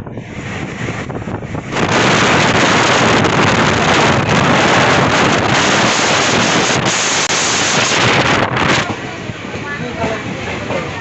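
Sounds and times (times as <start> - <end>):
train running noise: 0.0 - 11.0
wind buffeting microphone: 0.0 - 11.0.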